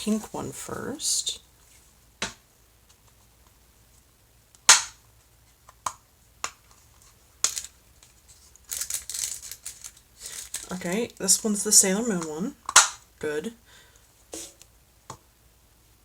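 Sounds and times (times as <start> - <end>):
hard plastic snapping: 4.7 - 5.0, 12.7 - 13.0
plastic packaging crinkling: 7.4 - 11.6.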